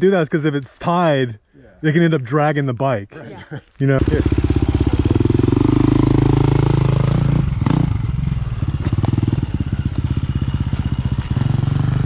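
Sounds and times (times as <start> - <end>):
dirt bike engine running: 4.0 - 12.0.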